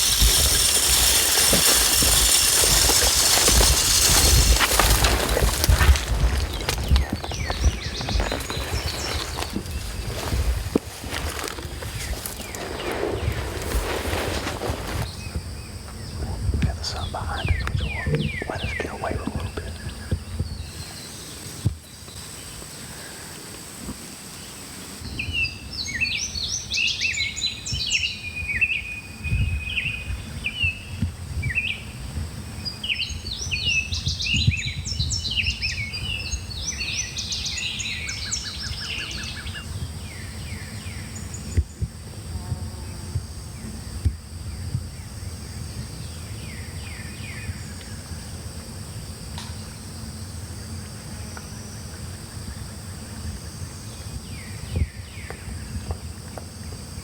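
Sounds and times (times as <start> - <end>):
songbirds chirping: 2.1 - 23.3.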